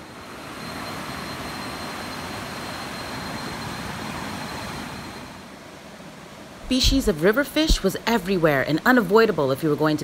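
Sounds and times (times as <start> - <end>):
faint high-pitched tone: 0.0 - 5.5.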